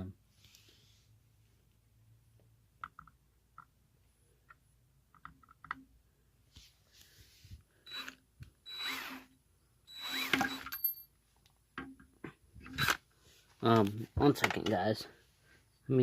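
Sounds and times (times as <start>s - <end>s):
cordless drill driving screws: 7.8s - 10.8s, 12.6s - 13.0s.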